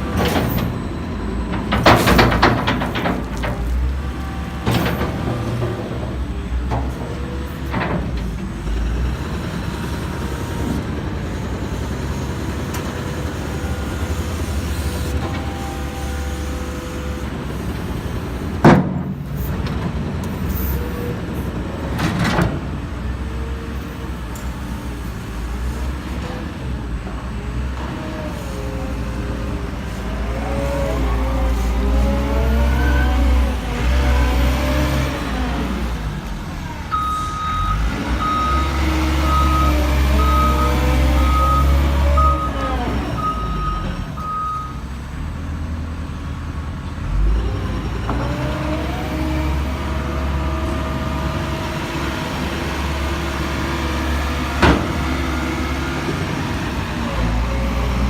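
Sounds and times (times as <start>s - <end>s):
diesel engine low rumble: 0.0s - 58.0s
reversing beeper: 36.9s - 44.8s.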